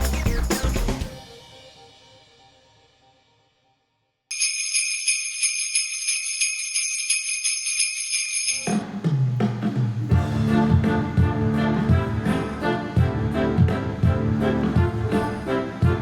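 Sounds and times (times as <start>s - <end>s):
sleigh bells shaken: 0.0s - 1.1s, 4.3s - 8.8s
band with low brass and drums: 0.0s - 1.4s, 9.4s - 16.0s.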